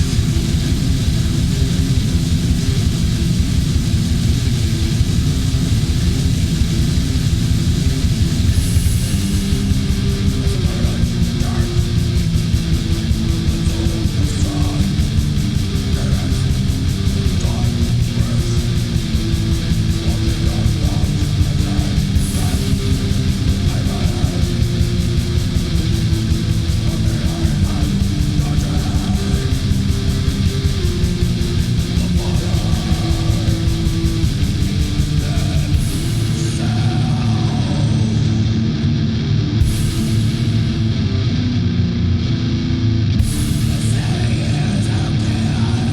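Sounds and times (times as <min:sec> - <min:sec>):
cymbal crash: 0:00.0 - 0:36.6
fast drumming: 0:00.0 - 0:37.6, 0:39.6 - 0:40.8, 0:43.2 - 0:45.7
heavily distorted guitars: 0:00.0 - 0:45.9.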